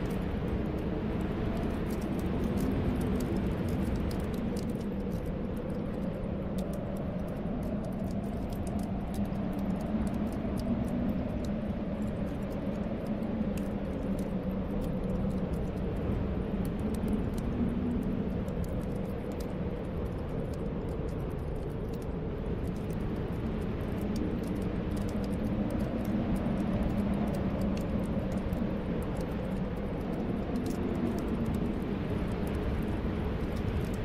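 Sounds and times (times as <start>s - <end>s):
storm wind moaning: 0.0s - 34.0s
wood fire crackling: 0.0s - 34.0s.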